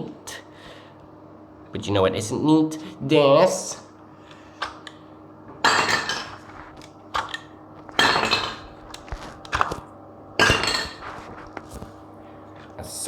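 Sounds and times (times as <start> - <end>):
plastic toys clattering: 5.7 - 9.8.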